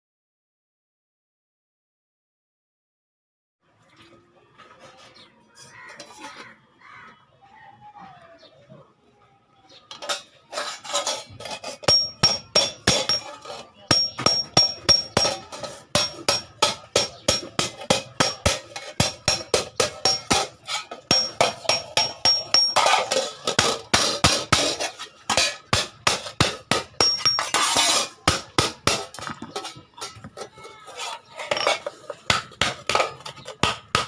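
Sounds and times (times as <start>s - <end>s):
hammer striking iron on anvil: 11.8s - 29.4s.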